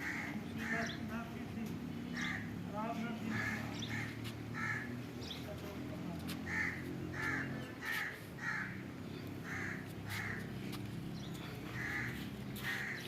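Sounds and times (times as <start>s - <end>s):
crow cawing: 0.0s - 1.0s, 2.2s - 2.6s, 3.2s - 5.1s, 6.4s - 10.8s, 11.4s - 13.0s.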